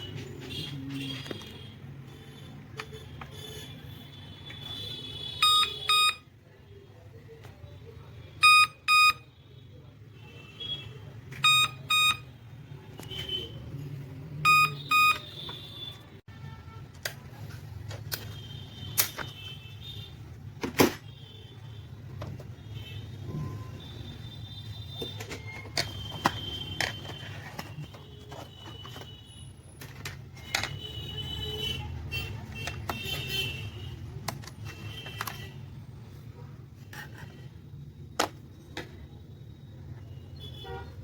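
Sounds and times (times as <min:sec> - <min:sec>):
laptop error beeps: 0:05.4 - 0:06.3, 0:08.4 - 0:09.3, 0:11.4 - 0:12.3, 0:14.4 - 0:15.6.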